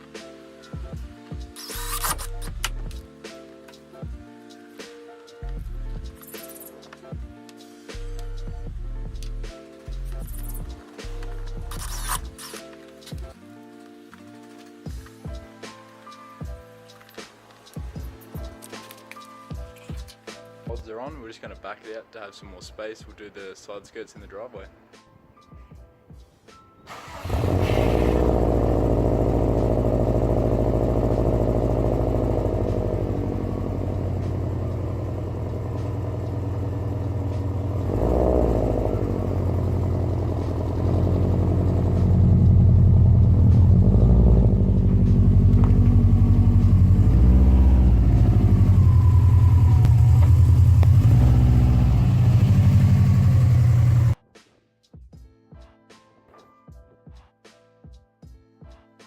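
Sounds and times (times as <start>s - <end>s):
car engine starting and idling: 26.9s - 54.2s.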